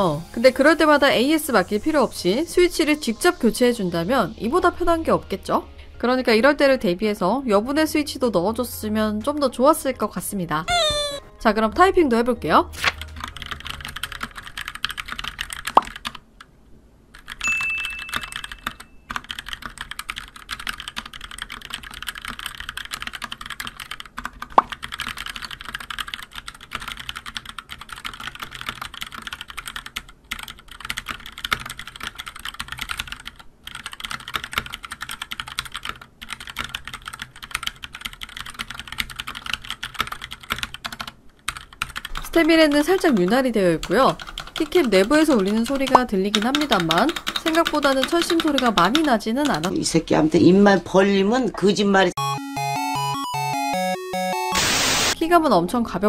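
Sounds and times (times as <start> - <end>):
short high tone: 10.7 - 11.3
mechanical keyboard typing: 12.8 - 16.2, 17.2 - 49.8.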